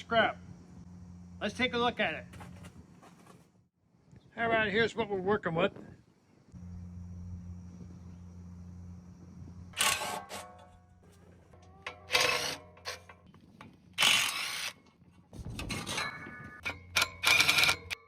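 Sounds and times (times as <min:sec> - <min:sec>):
noisy hand tool work: 0:09.8 - 0:10.7, 0:11.9 - 0:13.2, 0:14.0 - 0:14.8.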